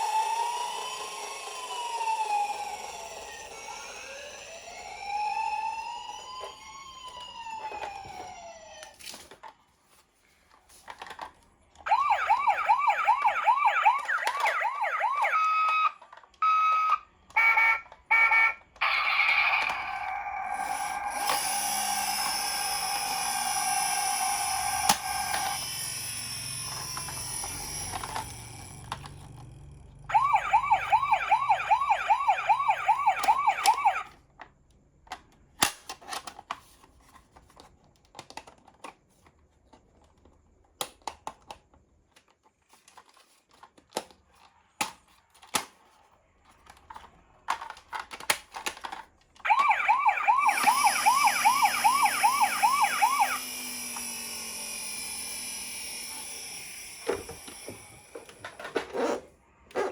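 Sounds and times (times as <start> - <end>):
toy siren steady tone: 0.0 - 9.0, 11.9 - 34.2, 49.4 - 58.6
toy siren warbling: 0.0 - 9.0, 11.9 - 34.2, 49.4 - 59.2.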